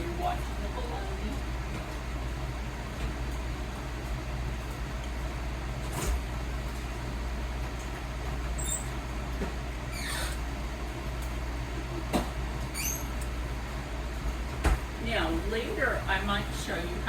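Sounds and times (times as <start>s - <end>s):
high squeaks: 12.7s - 13.2s.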